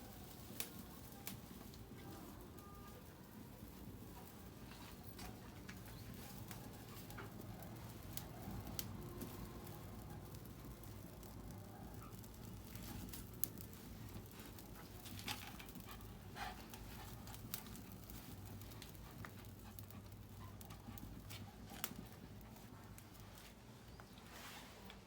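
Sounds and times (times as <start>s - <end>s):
dog panting: 15.4s - 21.8s.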